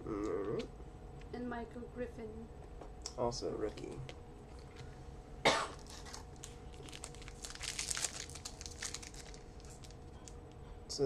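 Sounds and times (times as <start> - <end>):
person coughing: 5.5 - 5.9
wrapper crinkling: 5.8 - 10.4.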